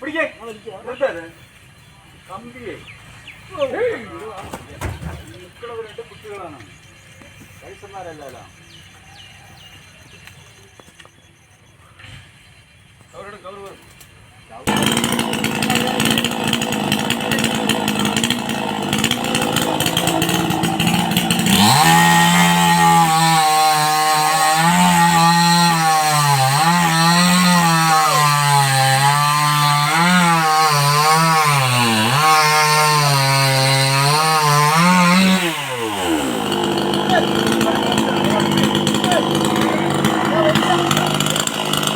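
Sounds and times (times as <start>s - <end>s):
chainsaw cutting wood: 14.7s - 41.9s.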